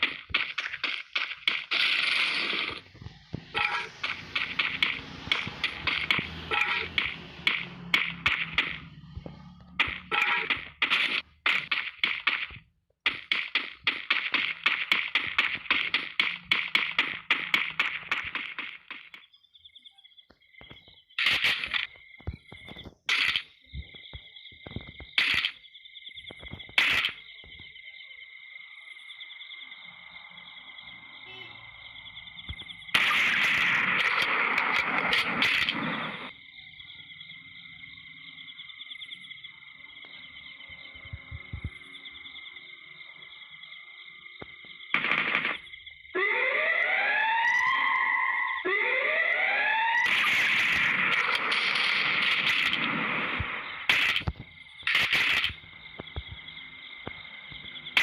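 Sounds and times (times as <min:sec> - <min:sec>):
rising siren-like wails: 0:02.8 - 0:10.5, 0:46.2 - 0:51.5
insect chorus: 0:13.4 - 0:46.2, 0:47.3 - 0:48.7, 0:49.7 - 0:58.0.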